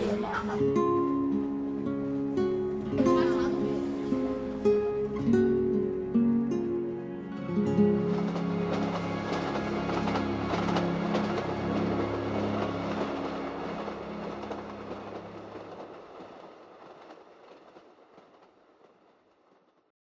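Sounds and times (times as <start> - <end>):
passenger train running: 0.0 - 19.8
train wheel clatter: 7.4 - 19.8.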